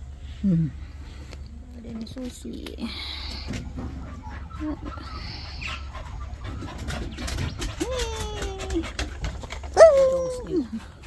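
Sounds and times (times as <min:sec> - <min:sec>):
dog whining: 0:04.0 - 0:11.0.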